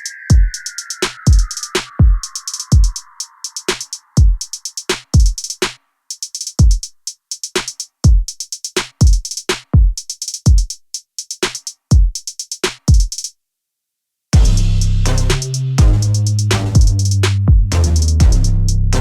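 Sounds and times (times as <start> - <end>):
electronic music with drum machine: 0.0 - 7.0, 14.4 - 19.0
hi-hat ticks: 0.0 - 13.3, 14.4 - 19.0
deep kick drums: 4.2 - 4.4, 14.4 - 19.0.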